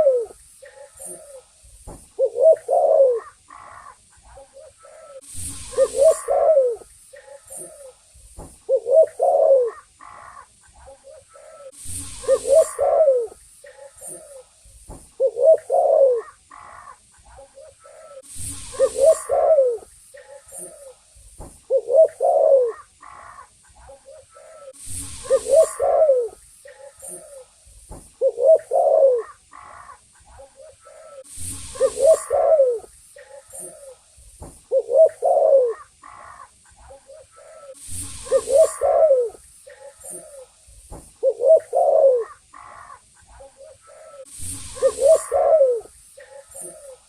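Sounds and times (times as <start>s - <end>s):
dove cooing: 0.0s - 8.0s, 8.6s - 14.5s, 15.2s - 21.0s, 21.7s - 27.5s, 28.2s - 34.0s, 34.7s - 40.6s, 41.2s - 47.0s
faint high hiss: 0.0s - 47.0s
short noise bursts: 11.7s - 13.6s, 18.2s - 19.3s, 24.8s - 26.6s, 31.2s - 33.1s, 37.8s - 39.7s, 44.3s - 46.2s.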